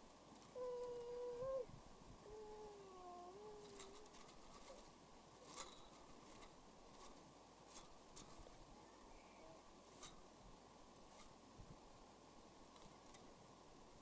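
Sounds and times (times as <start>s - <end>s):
faint falling animal-like call: 0.4s - 4.9s
soft ticks: 3.5s - 4.8s.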